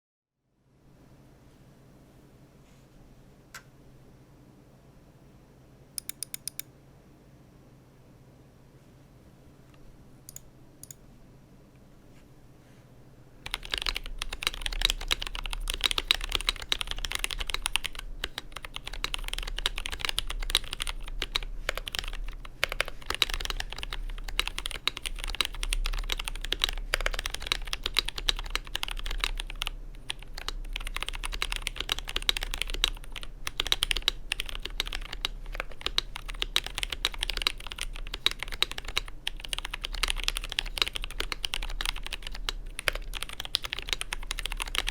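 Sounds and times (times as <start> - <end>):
fast mechanical keyboard typing: 13.4 - 44.9.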